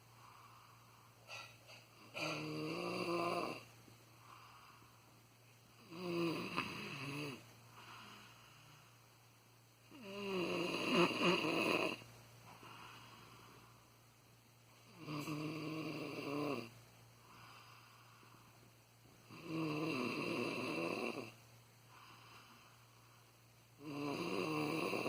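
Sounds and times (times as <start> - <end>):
man snoring: 2.2 - 3.7, 5.8 - 7.4, 9.9 - 12.0, 14.9 - 16.7, 19.3 - 21.4, 23.8 - 25.0.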